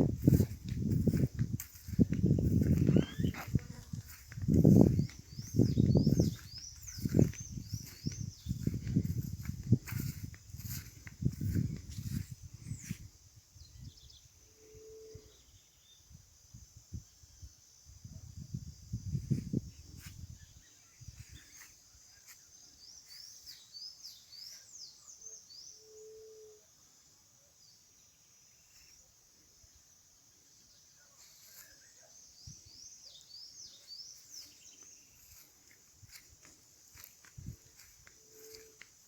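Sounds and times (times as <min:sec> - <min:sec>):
bird chirping: 0:00.2 - 0:13.0.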